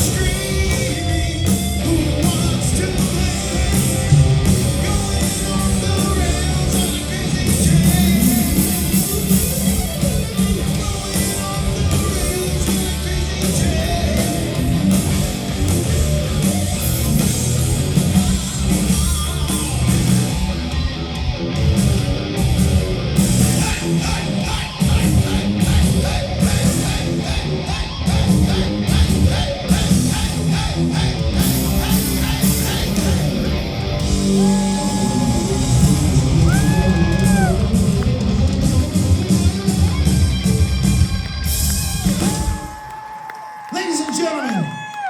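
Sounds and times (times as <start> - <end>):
singer: 0.0 - 9.6, 10.2 - 15.2, 23.3 - 37.8
heavy bass and drums: 0.0 - 42.8
distorted electric guitars: 0.0 - 42.9.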